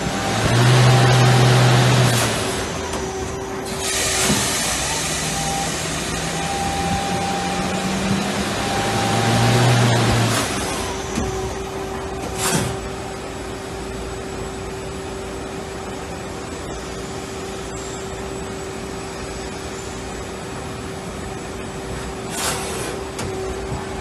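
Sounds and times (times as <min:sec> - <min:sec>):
lathe whining: 0:00.0 - 0:12.4.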